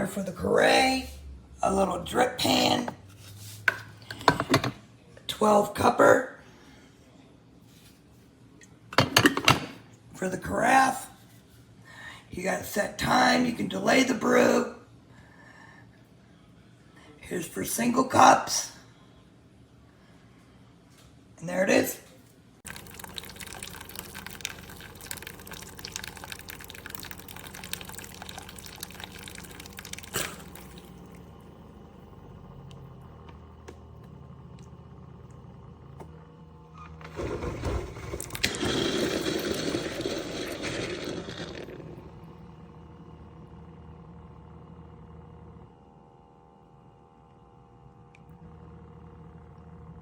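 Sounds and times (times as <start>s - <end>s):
coffee maker hum: 0.0s - 6.4s, 8.9s - 11.0s, 22.6s - 50.0s
water pouring and gurgling: 22.6s - 31.4s, 37.0s - 42.4s.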